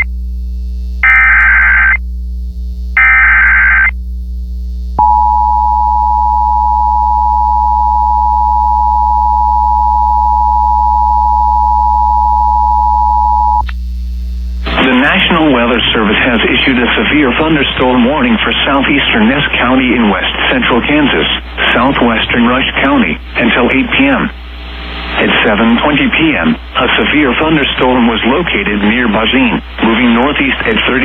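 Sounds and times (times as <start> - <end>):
steady low hum: 0.0 - 31.0
harsh two-tone alert signal: 1.0 - 2.0, 3.0 - 3.9
warbling data tones: 1.0 - 2.0, 3.0 - 4.0.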